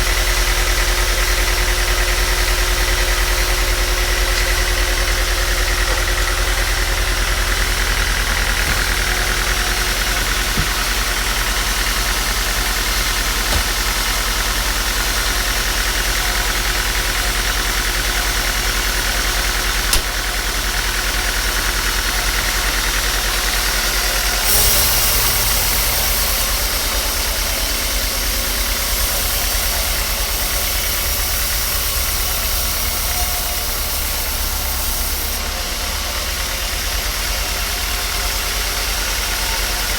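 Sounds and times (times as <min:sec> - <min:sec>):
machine motor humming: 0:02.0 - 0:21.6, 0:23.4 - 0:35.5
sharp click: 0:19.9 - 0:20.2
hissing noise: 0:24.4 - 0:35.4.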